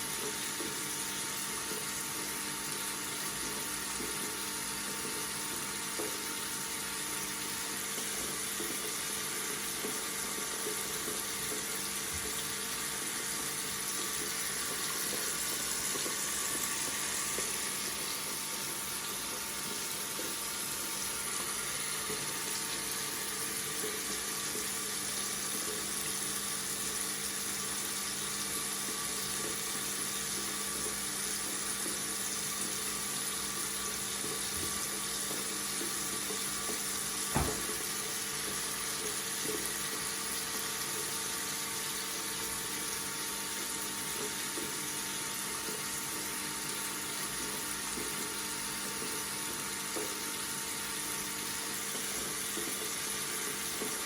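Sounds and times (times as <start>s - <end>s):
tap running into sink: 7.9s - 24.7s, 34.2s - 41.2s, 47.2s - 50.4s, 51.9s - 54.0s.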